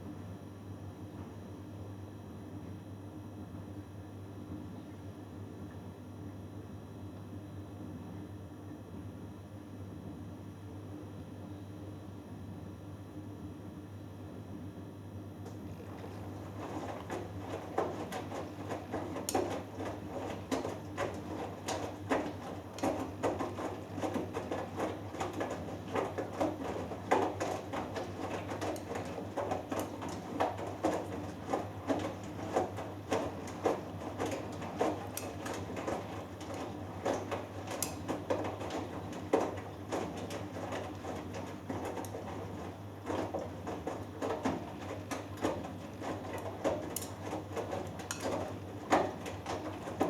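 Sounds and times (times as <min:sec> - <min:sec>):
washing machine motor hum: 0:12.1 - 0:50.0
wet laundry tumbling in drum: 0:15.4 - 0:50.0.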